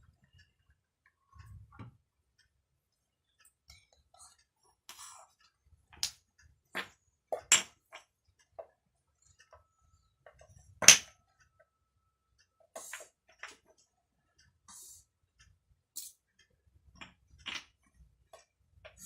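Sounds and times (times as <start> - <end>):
wooden toy blocks clacking: 6.0 - 8.1, 10.3 - 11.1, 17.0 - 17.8.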